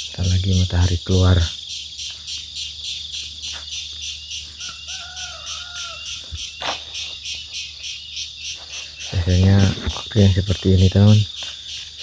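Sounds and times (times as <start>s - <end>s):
crickets chirping: 0.0s - 12.0s
rooster crowing: 4.6s - 6.6s.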